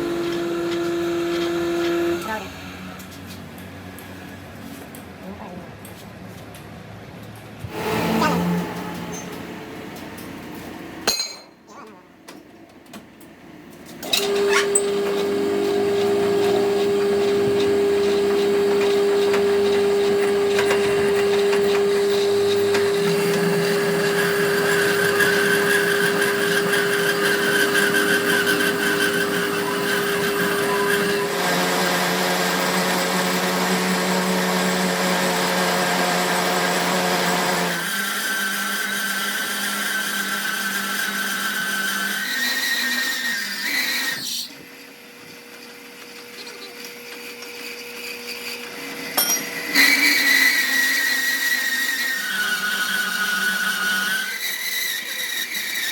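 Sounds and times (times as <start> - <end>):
power tool whining: 7.7 - 10.4, 14.0 - 44.7.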